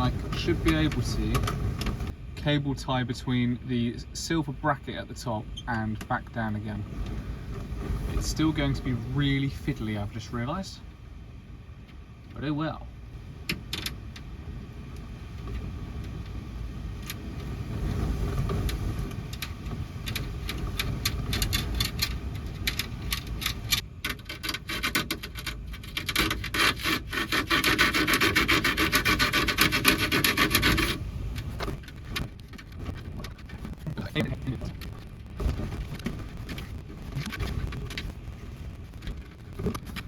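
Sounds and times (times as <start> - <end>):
storm wind rumble: 0.0 - 40.0
scraping and rasping: 17.7 - 40.0.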